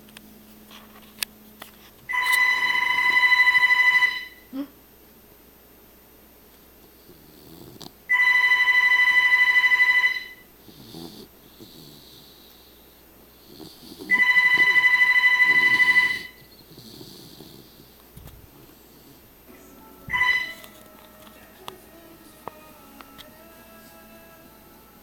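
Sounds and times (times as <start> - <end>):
telephone ringing: 2.1 - 4.5, 8.1 - 10.4, 14.1 - 16.4, 19.7 - 23.8
dog snoring: 7.0 - 8.2, 10.6 - 19.4.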